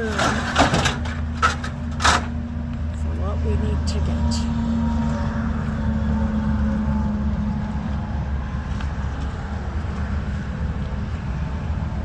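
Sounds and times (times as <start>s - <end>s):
vehicle engine idling: 0.1s - 12.0s.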